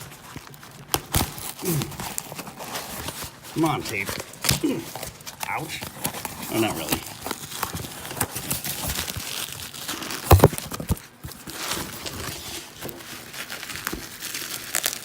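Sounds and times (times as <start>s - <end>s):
cardboard and wrapping rustling: 0.0s - 15.0s.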